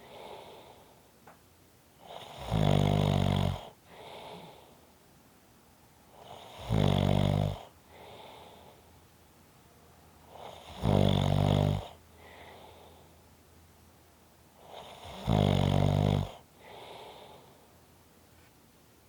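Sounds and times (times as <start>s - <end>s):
soft breath: 0.0s - 1.1s, 3.7s - 5.0s, 7.8s - 9.0s, 12.1s - 13.3s, 16.5s - 17.8s
person snoring: 2.1s - 4.6s, 6.2s - 8.2s, 10.4s - 12.6s, 14.8s - 17.4s.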